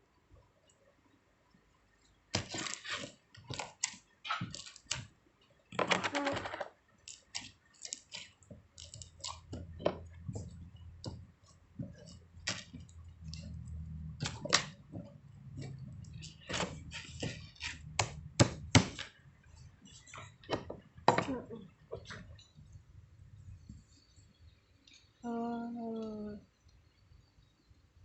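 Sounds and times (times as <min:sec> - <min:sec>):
low steady hum: 0:08.6 - 0:28.0.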